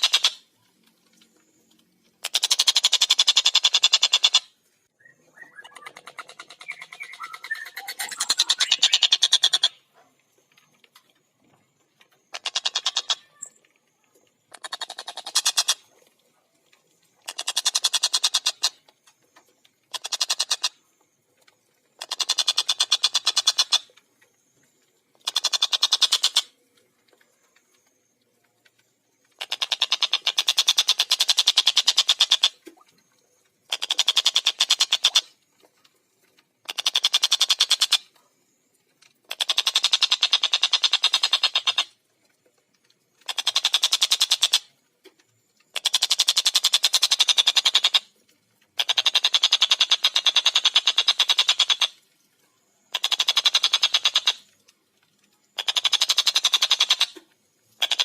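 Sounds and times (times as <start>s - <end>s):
kingfisher rattling calls: 2.2s - 4.5s, 5.3s - 9.9s, 12.3s - 13.6s, 14.5s - 15.9s, 17.2s - 18.8s, 19.9s - 20.8s, 22.0s - 23.9s, 25.2s - 26.6s, 29.4s - 32.6s, 33.7s - 35.2s, 36.6s - 38.1s, 39.3s - 42.0s, 43.2s - 44.7s, 45.7s - 48.1s, 48.8s - 52.0s, 52.9s - 54.4s, 55.6s - 57.2s, 57.8s - 58.0s.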